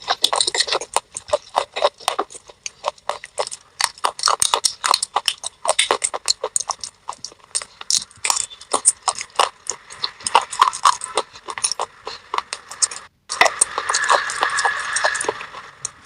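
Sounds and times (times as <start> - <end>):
mouth crunching clay pieces: 0.0 - 16.0.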